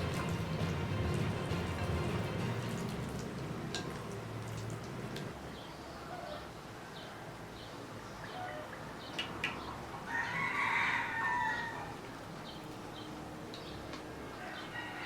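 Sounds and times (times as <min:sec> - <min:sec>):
rooster crowing: 0:10.1 - 0:12.0, 0:14.3 - 0:15.0.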